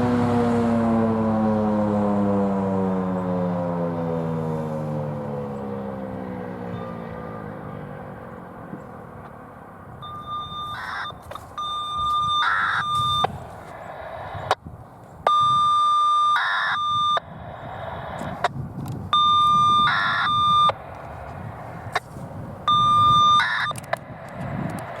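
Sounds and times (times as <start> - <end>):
warning siren winding down: 0.0 - 22.0, 22.6 - 24.0
electronic beeps: 10.0 - 13.4, 15.2 - 18.5, 19.1 - 20.8, 22.7 - 24.0.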